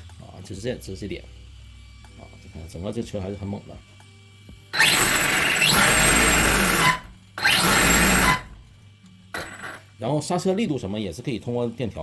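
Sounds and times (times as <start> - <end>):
electric motor whining: 4.8 - 8.7, 9.4 - 9.8.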